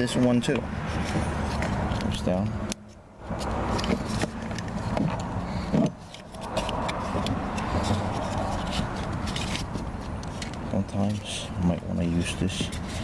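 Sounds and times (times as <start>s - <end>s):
clicks and knocks of trim parts: 0.9s - 11.2s.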